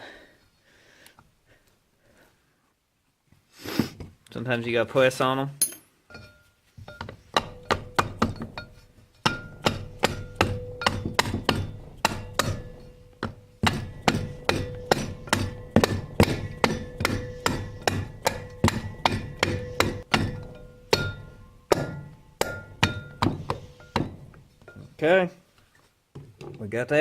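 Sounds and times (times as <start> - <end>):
hammer tapping on ringing metal drum: 5.6 - 25.0.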